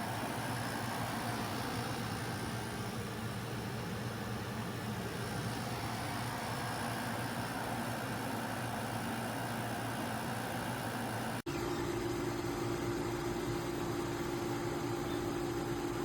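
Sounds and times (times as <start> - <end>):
air conditioner hum and airflow: 0.0 - 16.0.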